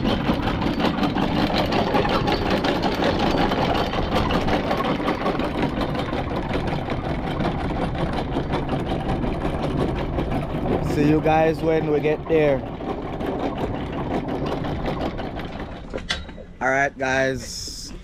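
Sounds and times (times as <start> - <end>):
boat engine running: 0.0 - 18.0.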